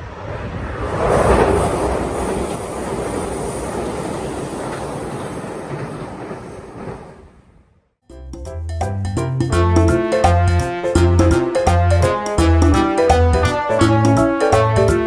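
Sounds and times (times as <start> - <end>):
train wheels clattering on bridge: 1.0 - 7.5.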